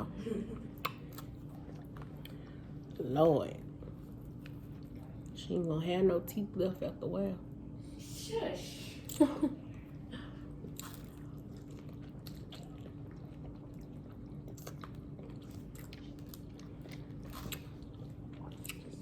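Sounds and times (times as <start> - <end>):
steady low hum: 0.0 - 19.0
chewing and biting food: 0.6 - 3.0, 3.6 - 5.4, 10.5 - 19.0.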